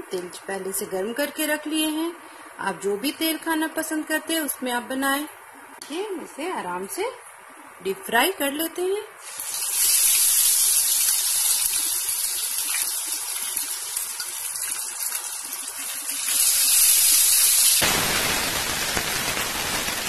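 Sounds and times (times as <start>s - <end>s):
fish deep-frying in oil: 9.2s - 20.0s.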